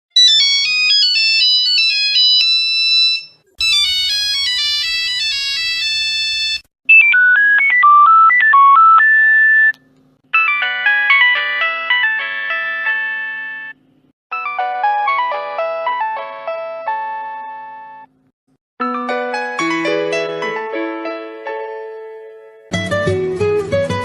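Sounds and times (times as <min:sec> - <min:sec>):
mobile phone ringtones: 0:00.2 - 0:09.7, 0:10.3 - 0:15.3.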